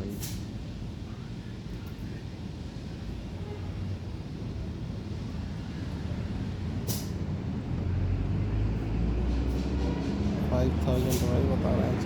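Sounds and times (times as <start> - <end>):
sharp hiss of air: 0.1 - 0.5, 6.8 - 7.2.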